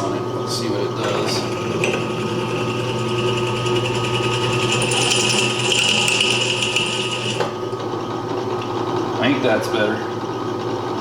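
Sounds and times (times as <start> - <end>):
electric drill whining: 1.4 - 7.6.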